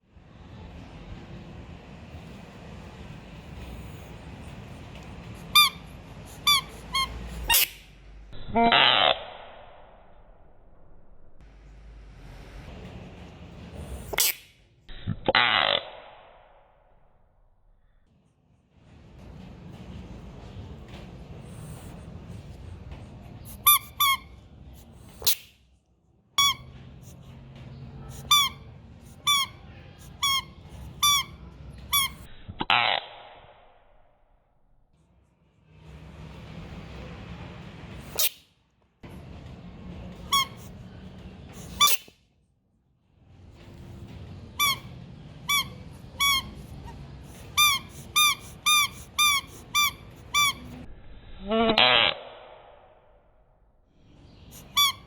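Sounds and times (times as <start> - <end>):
short high squeaks: 5.3 - 9.5, 23.4 - 25.5, 28.0 - 33.0, 41.6 - 42.1, 44.6 - 50.8.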